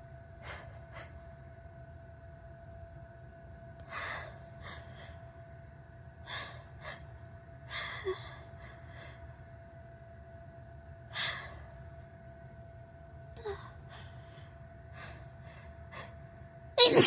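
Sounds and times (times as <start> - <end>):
woman gasping and sniffing: 16.8 - 17.0.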